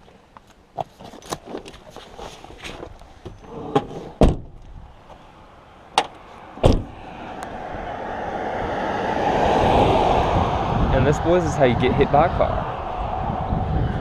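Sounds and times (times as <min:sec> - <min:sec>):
approaching car road noise: 0:04.9 - 0:14.0.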